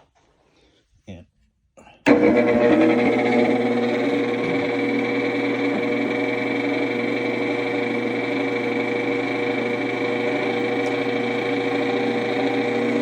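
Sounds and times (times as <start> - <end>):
coffee grinder motor humming: 2.1 - 13.0.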